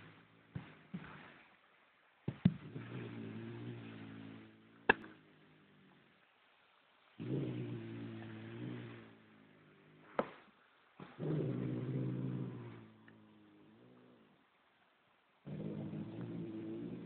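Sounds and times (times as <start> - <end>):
cat growling low: 2.6 - 6.1, 7.2 - 10.4, 11.0 - 14.4, 15.4 - 17.0.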